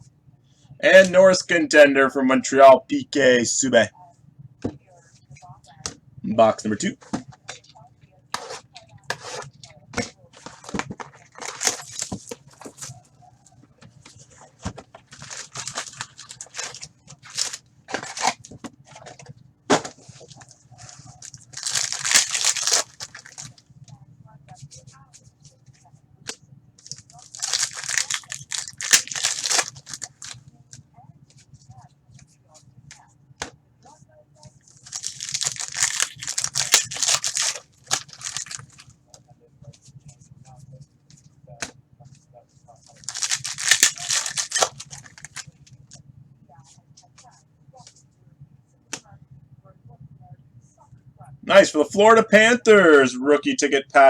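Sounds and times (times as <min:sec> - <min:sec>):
plastic wrapping crinkling and tearing: 0:10.4 - 0:13.0, 0:14.2 - 0:19.2, 0:20.0 - 0:23.6, 0:26.8 - 0:30.4, 0:34.7 - 0:38.9, 0:42.9 - 0:45.6.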